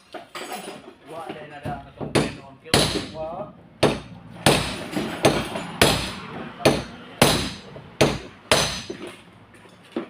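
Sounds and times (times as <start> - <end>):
hammer striking steel: 2.0 - 9.1.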